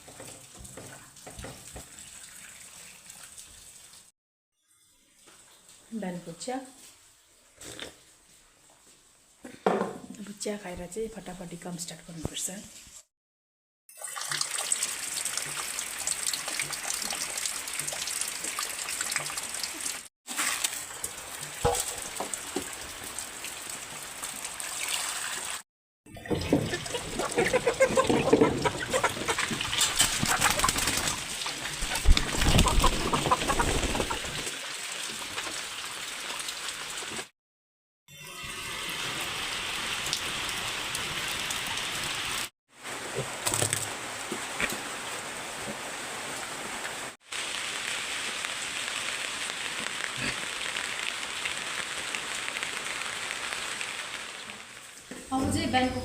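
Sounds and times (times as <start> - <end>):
steady rain falling: 20.7 - 24.8, 39.3 - 55.2.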